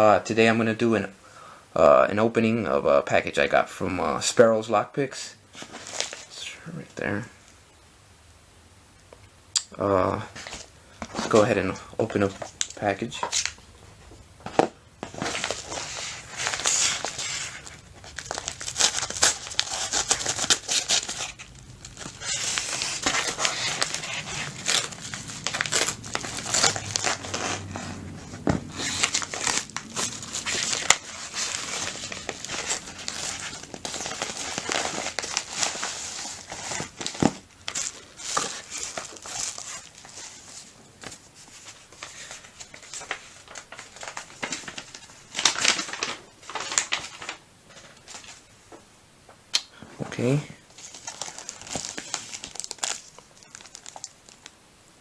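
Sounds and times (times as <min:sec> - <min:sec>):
packaging crinkling and tearing: 0:05.6 - 0:06.4, 0:10.3 - 0:13.7, 0:14.5 - 0:48.5, 0:50.7 - 0:54.6.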